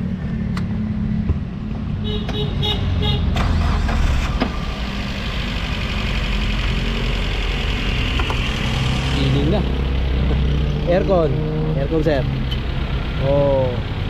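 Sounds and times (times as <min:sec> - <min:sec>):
car engine idling: 0:03.5 - 0:14.0.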